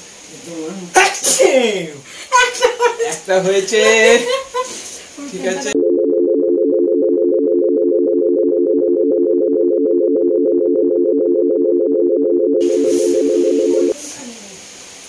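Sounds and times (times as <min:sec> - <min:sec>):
pulsing synthesized buzzing chord: 0:05.8 - 0:14.0.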